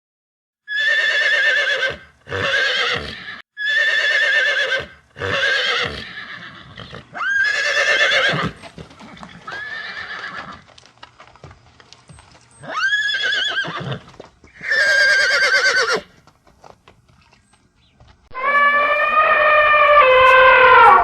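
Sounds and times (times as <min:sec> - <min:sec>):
horse whinnying: 0:00.7 - 0:10.7, 0:12.6 - 0:16.1, 0:18.3 - 0:21.0.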